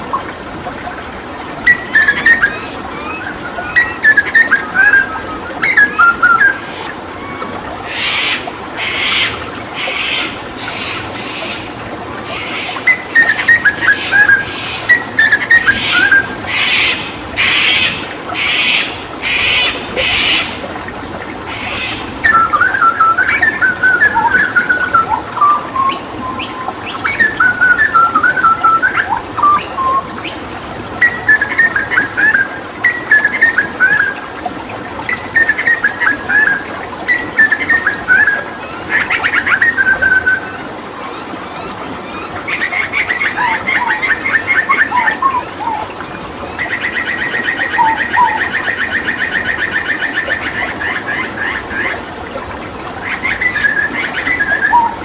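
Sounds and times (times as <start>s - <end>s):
running water: 0.0s - 55.0s
bird singing whistled notes: 1.7s - 6.6s, 22.2s - 30.1s.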